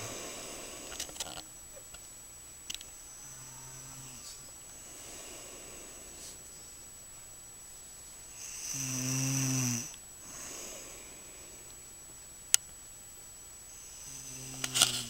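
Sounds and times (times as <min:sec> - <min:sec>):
person snoring: 0:00.0 - 0:01.4, 0:03.1 - 0:06.5, 0:08.3 - 0:11.7, 0:13.8 - 0:15.0
soft breath: 0:00.0 - 0:01.4, 0:03.2 - 0:06.8, 0:10.2 - 0:12.0.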